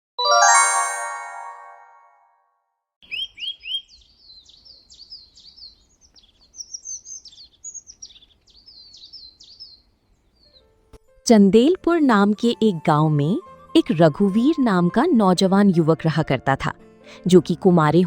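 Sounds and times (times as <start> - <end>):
ringing musical tone: 0.2 - 2.4
small birds chirping: 3.0 - 10.8.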